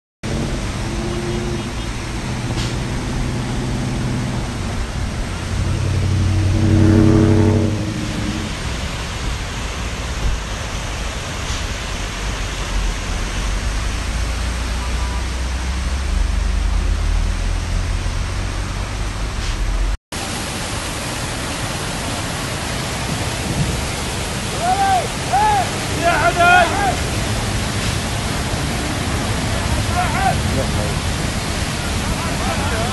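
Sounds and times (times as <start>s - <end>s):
vehicle engines running: 0.2s - 32.9s
floodwater rushing: 0.3s - 32.9s.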